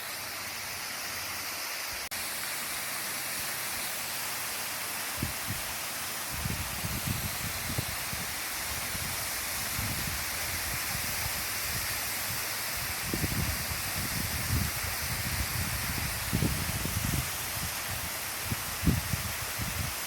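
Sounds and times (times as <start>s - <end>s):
waterfall rushing: 0.0s - 20.0s
wind buffeting the microphone: 5.2s - 5.6s, 6.3s - 20.0s.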